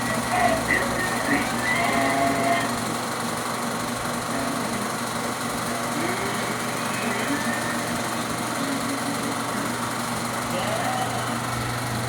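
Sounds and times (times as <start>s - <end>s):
film projector whirring: 0.0s - 12.0s.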